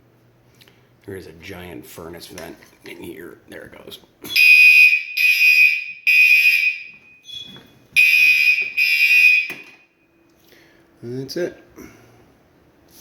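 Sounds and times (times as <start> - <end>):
fire alarm horn blasts: 4.3 - 10.2.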